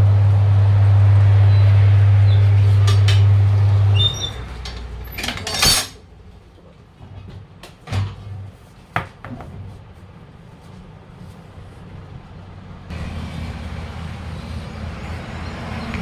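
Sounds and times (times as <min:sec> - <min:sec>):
electric motor hum: 0:00.0 - 0:04.7
metal tools clinking: 0:04.2 - 0:06.0.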